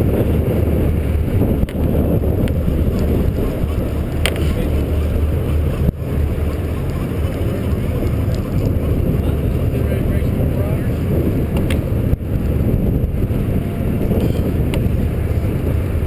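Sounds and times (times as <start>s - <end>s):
boat engine droning: 0.0s - 16.0s
wind buffeting microphone: 0.0s - 16.0s.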